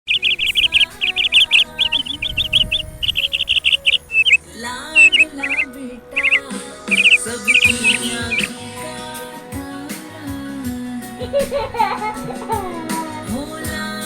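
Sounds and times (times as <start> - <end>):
bird chirping sharp high notes: 0.1 - 9.0
soft background music: 0.1 - 14.0.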